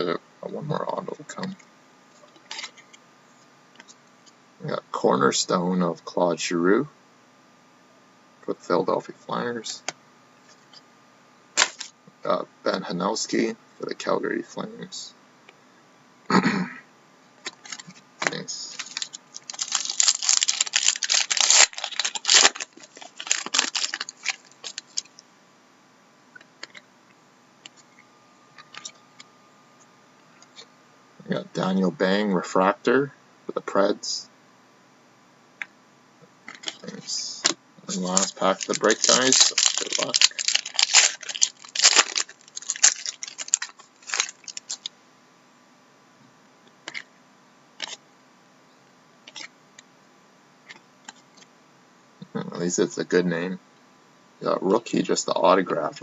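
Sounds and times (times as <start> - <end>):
card wrapper crinkling: 11.6 - 11.9, 17.4 - 25.2, 36.5 - 44.9.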